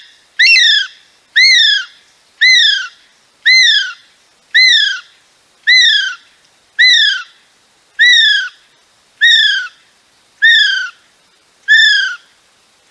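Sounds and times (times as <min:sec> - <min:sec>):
kiwi shrill whistling calls: 0:00.0 - 0:04.0, 0:04.6 - 0:05.1, 0:05.7 - 0:06.2, 0:06.8 - 0:07.3, 0:08.0 - 0:08.6, 0:09.2 - 0:09.8, 0:10.4 - 0:11.0, 0:11.7 - 0:12.3.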